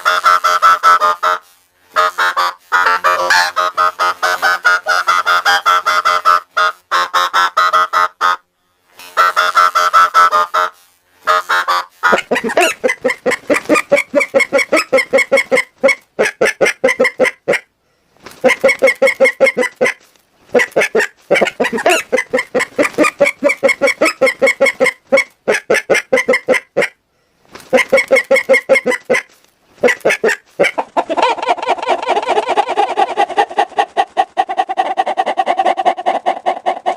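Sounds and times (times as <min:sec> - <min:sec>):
hen clucking with voice effect: 0:11.3 - 0:17.7, 0:18.4 - 0:27.0, 0:27.7 - 0:36.9.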